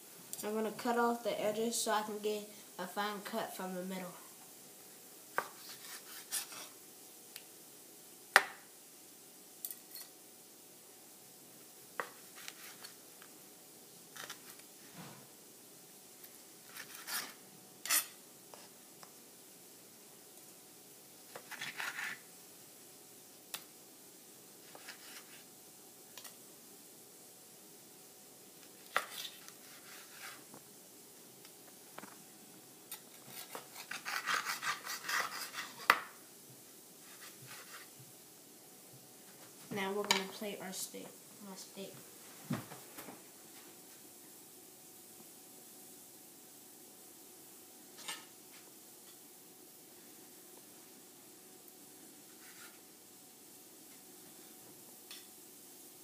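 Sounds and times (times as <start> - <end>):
knife tapping and scraping board: 5.4 - 6.7, 32.9 - 36.1.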